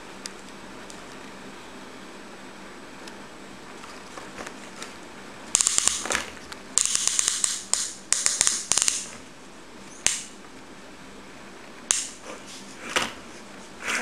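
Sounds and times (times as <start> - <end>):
plastic toy clicks and scraping: 5.6 - 9.1.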